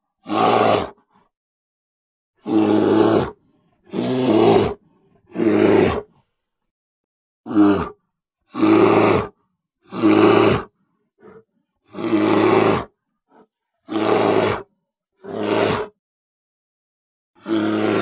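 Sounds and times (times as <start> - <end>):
bear roaring: 0.2 - 1.1, 2.4 - 6.2, 7.5 - 16.0, 17.4 - 18.0
bear breathing: 2.4 - 6.6, 7.5 - 16.0.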